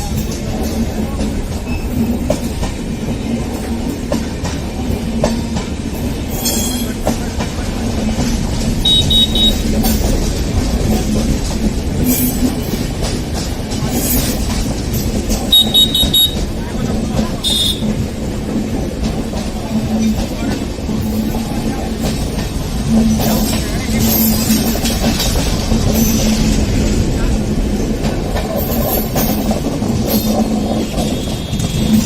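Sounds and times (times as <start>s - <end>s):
rail joint clicks: 0.0s - 32.0s
train wheels rumbling on rails: 0.0s - 32.0s
high-pitched track chirps: 8.9s - 9.6s, 15.5s - 16.4s.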